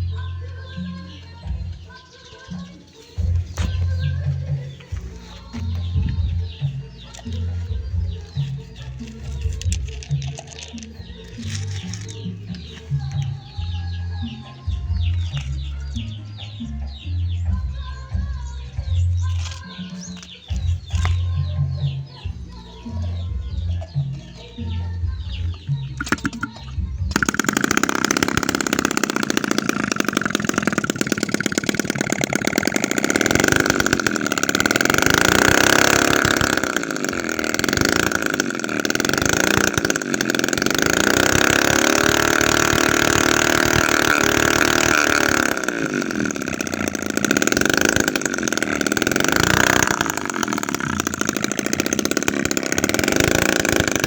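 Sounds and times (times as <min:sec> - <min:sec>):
small two-stroke engine buzzing: 0:00.0 - 0:54.0.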